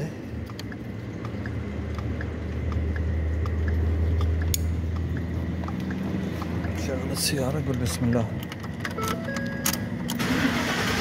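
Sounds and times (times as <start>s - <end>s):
faint rapid ticking: 0.0s - 8.4s
low mechanical hum: 0.0s - 11.0s.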